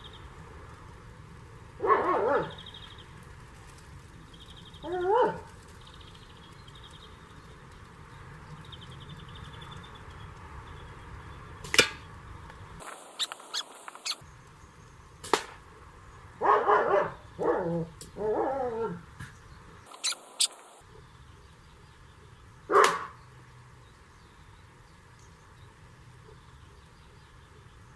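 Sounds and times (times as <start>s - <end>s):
slingshot ball striking target: 11.6s - 12.1s, 15.2s - 15.6s
dog whining and yelping: 13.2s - 14.2s, 19.9s - 20.6s.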